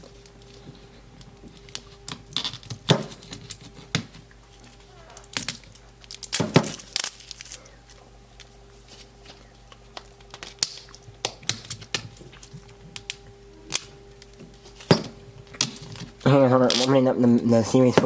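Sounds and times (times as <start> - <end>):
plastic wrap crinkling and tearing: 4.5 - 17.0.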